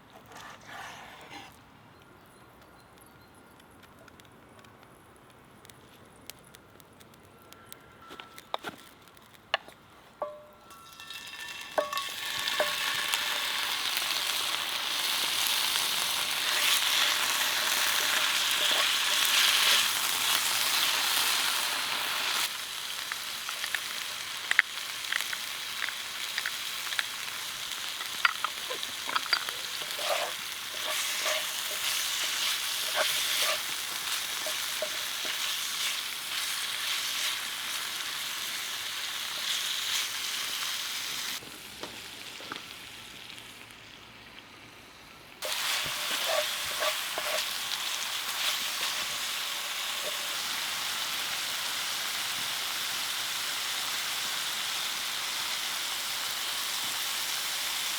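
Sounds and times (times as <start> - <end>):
food sizzling in a pan: 10.2 - 57.9
stirring clicks and scrapes: 16.5 - 19.9, 27.9 - 37.0, 45.4 - 49.2.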